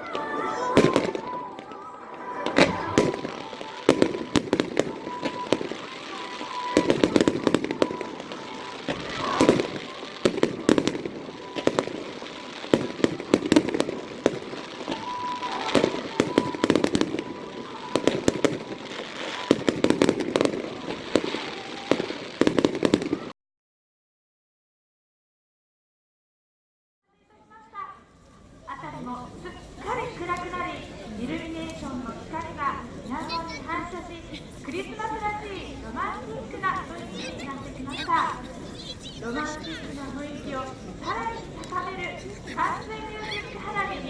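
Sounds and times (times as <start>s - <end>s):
music playing: 0.0s - 22.4s
fireworks bangs and crackling: 0.0s - 23.3s, 28.9s - 44.0s.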